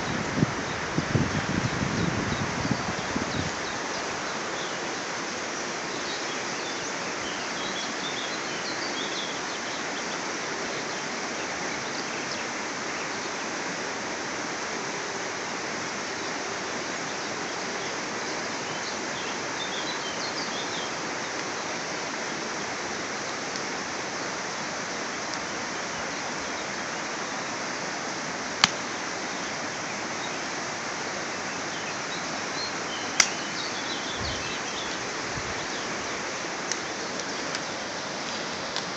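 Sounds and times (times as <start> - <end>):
birds chirping: 0.0 - 13.7, 15.8 - 38.9
campfire hissing: 0.0 - 38.9
fire crackling pops: 28.6 - 28.8.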